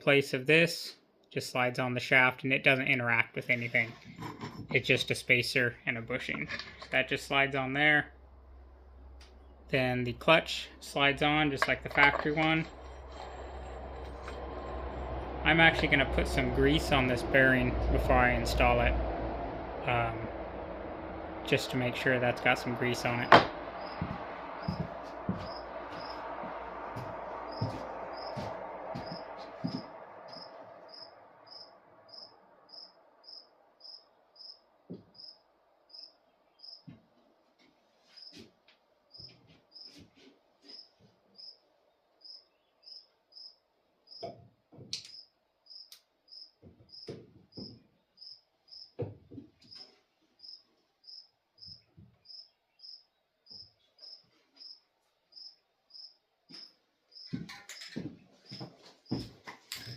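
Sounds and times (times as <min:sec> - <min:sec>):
insect chirping: 0:23.6 - 0:26.8, 0:27.4 - 0:36.9, 0:38.2 - 0:38.4, 0:39.1 - 0:40.0, 0:40.7 - 0:41.6, 0:42.2 - 0:44.3, 0:45.0 - 0:49.0, 0:49.7 - 0:57.9.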